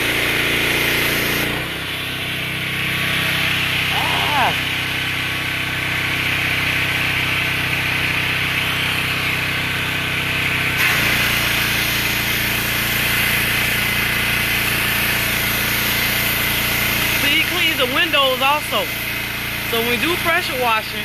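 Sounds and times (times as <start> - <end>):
high-pressure water spray hiss: 0.0 - 1.8, 10.8 - 20.8
gasoline engine running: 0.0 - 21.0.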